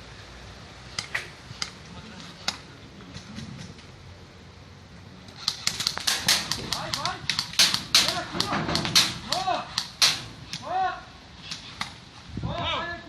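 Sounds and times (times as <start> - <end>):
airsoft gun shots: 5.4 - 10.6.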